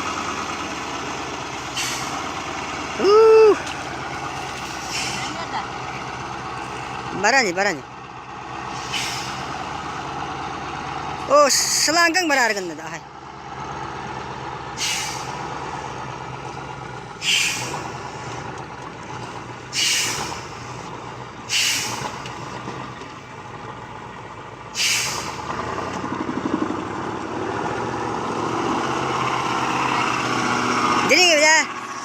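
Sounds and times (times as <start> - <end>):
diesel truck engine running: 0.0 - 32.0
air brake hisses: 1.8 - 2.2, 8.7 - 9.5, 14.8 - 15.4, 17.2 - 17.7, 19.7 - 20.4, 21.5 - 22.0, 24.8 - 25.4.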